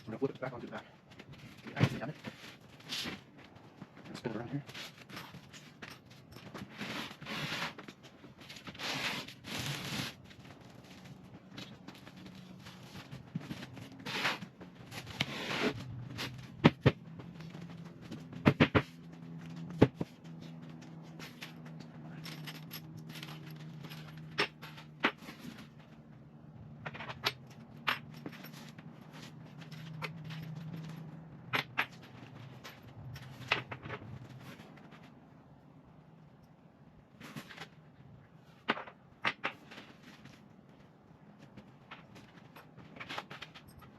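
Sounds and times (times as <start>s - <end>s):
clicks and knocks against wood: 38.6s - 40.4s.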